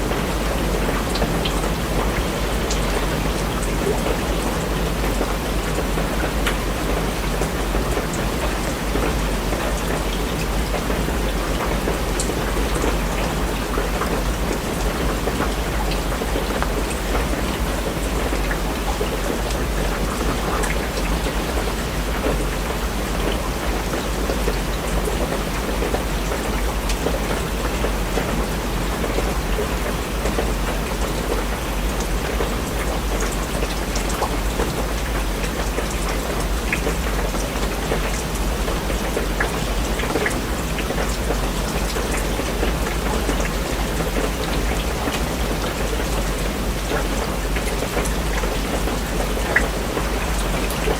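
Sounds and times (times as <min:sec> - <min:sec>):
steady rain hiss: 0:00.0 - 0:50.9
raindrop taps: 0:11.6 - 0:19.6.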